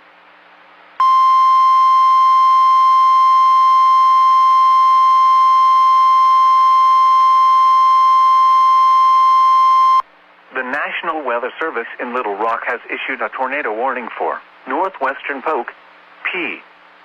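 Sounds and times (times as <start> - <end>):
steady alarm tone: 1.0 - 10.0.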